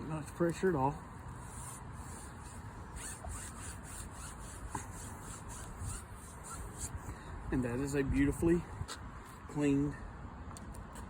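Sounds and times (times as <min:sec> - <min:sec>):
brushing across window screen mesh: 0:00.4 - 0:07.1.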